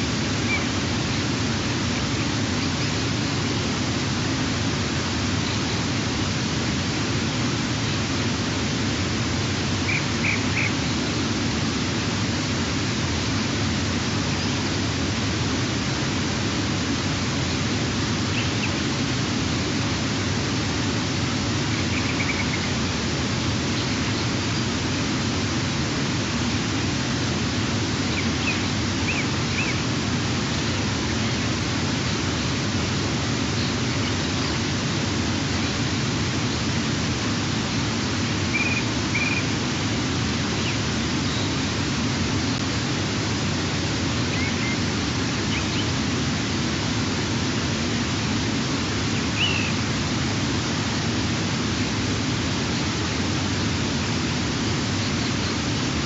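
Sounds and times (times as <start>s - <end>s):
microphone hiss: 0.0s - 56.0s
faint bird chirps: 0.4s - 1.3s, 9.8s - 11.1s, 18.2s - 18.8s, 21.7s - 22.8s, 28.0s - 29.8s, 38.5s - 39.6s, 40.6s - 41.6s, 44.3s - 46.0s, 49.1s - 49.8s.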